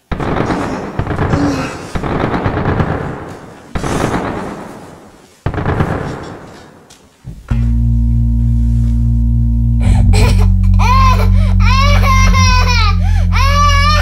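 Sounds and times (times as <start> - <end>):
low droning tone: 7.5 - 14.0.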